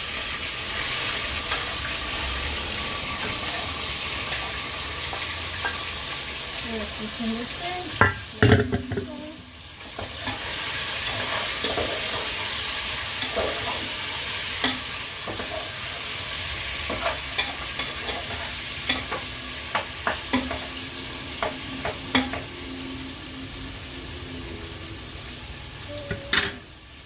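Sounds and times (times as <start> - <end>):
chicken sizzling in a pot: 0.0 - 27.0
utensil knocking against pot: 8.0 - 9.2.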